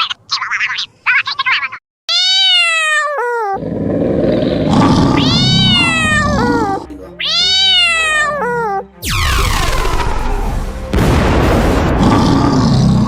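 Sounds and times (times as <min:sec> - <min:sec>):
cat meowing: 0:02.1 - 0:03.6, 0:05.0 - 0:08.8.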